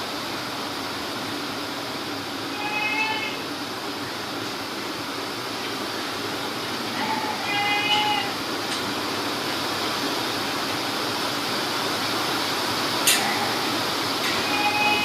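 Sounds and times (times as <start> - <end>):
steady background hiss: 0.0 - 15.0
goat bleating: 7.0 - 8.4, 14.3 - 15.0.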